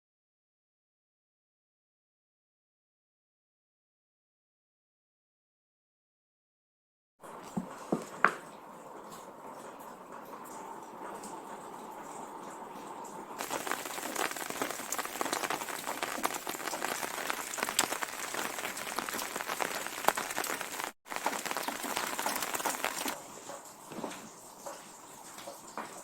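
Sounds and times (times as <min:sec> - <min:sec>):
rain on a hard surface: 0:07.2 - 0:26.0.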